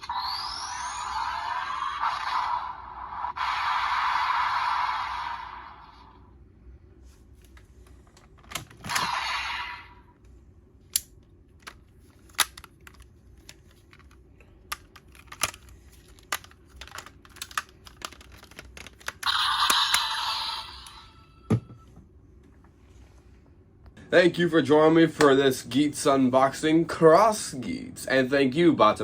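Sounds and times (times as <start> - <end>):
plastic toy belt clicking: 12.4 - 19.3
toy speaker sound burst: 19.2 - 21.5.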